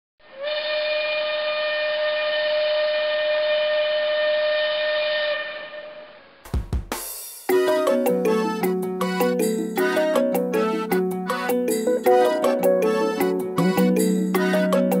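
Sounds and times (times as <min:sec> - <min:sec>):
train whistle blowing: 0:00.2 - 0:06.4.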